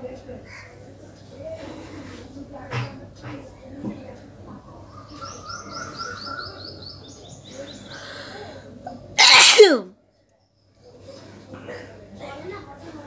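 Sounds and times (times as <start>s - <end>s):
woman sneezing: 9.2s - 9.9s.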